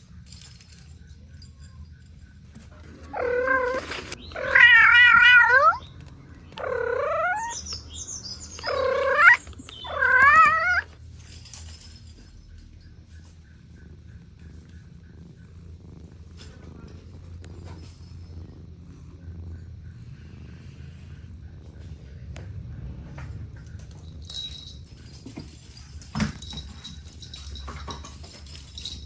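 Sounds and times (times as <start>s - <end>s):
cat meowing: 3.0s - 5.9s, 6.6s - 7.7s, 8.6s - 10.9s.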